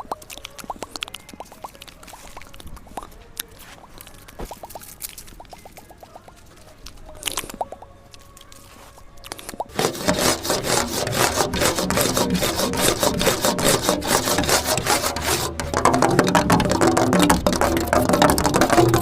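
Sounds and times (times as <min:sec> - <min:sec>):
scratching and rubbing on wood: 0:08.3 - 0:19.0.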